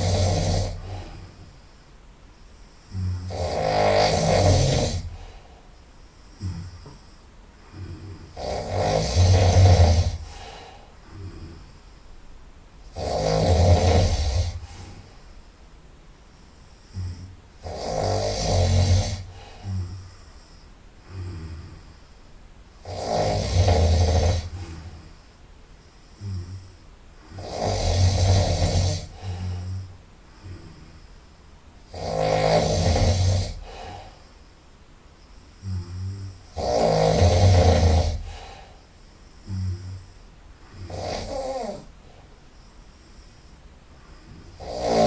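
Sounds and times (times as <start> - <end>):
person snoring loudly: 0.0 - 1.4, 2.8 - 5.4, 6.3 - 11.8, 12.9 - 15.1, 16.7 - 22.0, 22.8 - 25.2, 26.2 - 31.1, 31.8 - 34.2, 35.6 - 38.8, 39.4 - 42.0, 44.2 - 45.0
soft breaths: 0.0 - 45.0.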